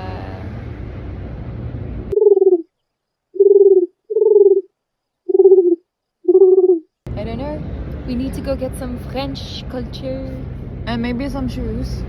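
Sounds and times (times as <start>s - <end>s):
street ambience: 0.0s - 2.2s, 7.0s - 12.0s.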